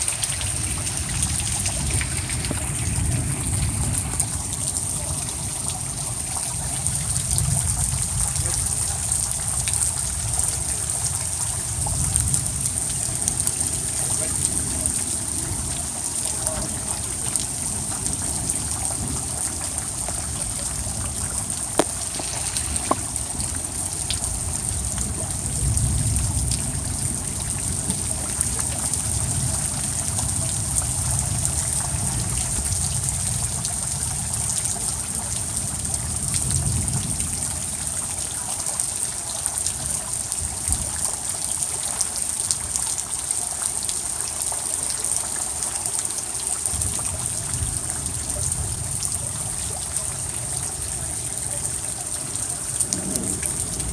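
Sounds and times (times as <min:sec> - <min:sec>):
floodwater flowing: 0:00.0 - 0:53.9.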